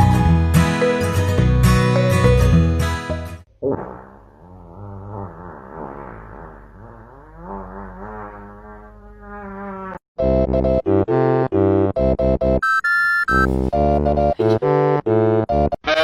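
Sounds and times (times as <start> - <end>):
music: 0.0 - 3.5, 10.2 - 12.6, 13.3 - 15.8.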